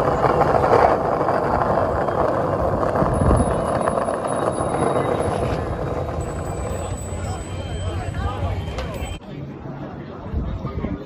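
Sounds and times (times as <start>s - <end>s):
skate wheels rolling on pavement: 0.0s - 9.2s
wind buffeting microphone: 0.0s - 9.2s.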